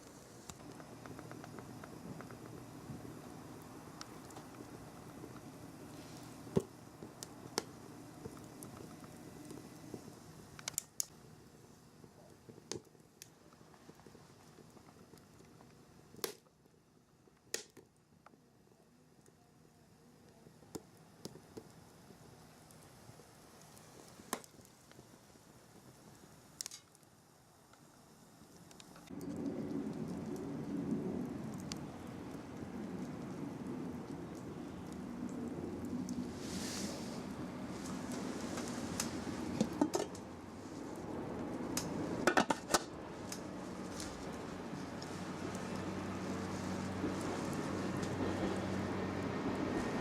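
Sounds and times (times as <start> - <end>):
fire crackling and popping: 0.0 - 50.0
low fire rumble: 0.0 - 50.0
low steady hiss: 0.0 - 50.0
sharp clicks and snaps: 0.5 - 2.6, 10.5 - 11.2, 17.4 - 17.9, 28.5 - 29.5.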